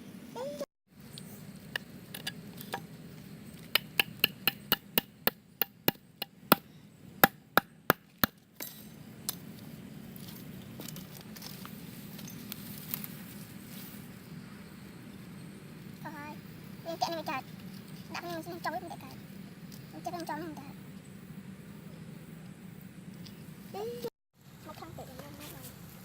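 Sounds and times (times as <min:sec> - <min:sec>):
blade chopping wood: 0:03.6 - 0:06.6.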